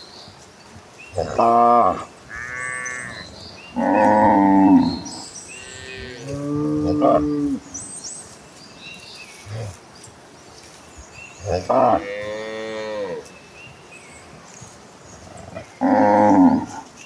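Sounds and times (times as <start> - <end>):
cattle mooing: 1.2 - 7.6, 15.6 - 16.8.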